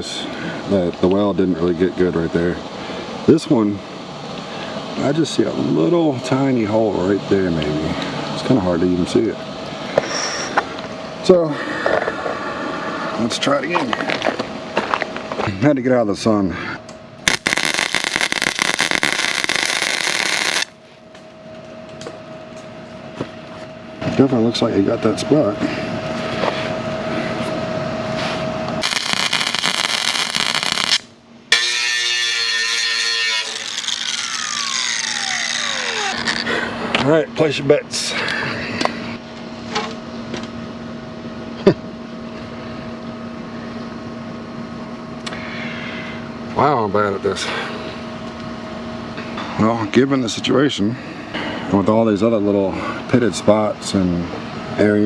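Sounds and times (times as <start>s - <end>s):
faint steady hum: 0.0s - 55.0s
arc welder crackling: 17.2s - 20.8s, 28.8s - 36.6s.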